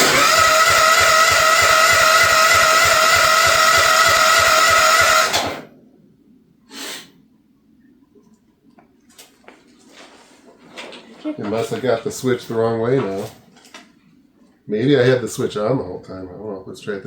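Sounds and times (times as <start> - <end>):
engine cranking on starter: 0.0 - 5.7.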